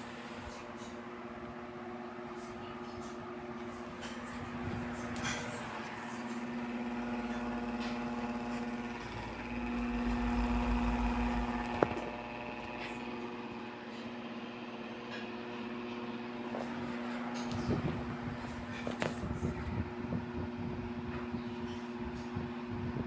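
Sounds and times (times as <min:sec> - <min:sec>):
electric fans humming: 0:00.0 - 0:22.1
low rumble: 0:07.0 - 0:13.2.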